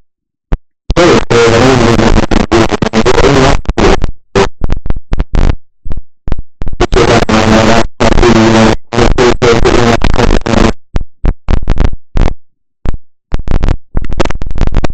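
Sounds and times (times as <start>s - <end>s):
harsh microphone static: 0.0s - 14.9s.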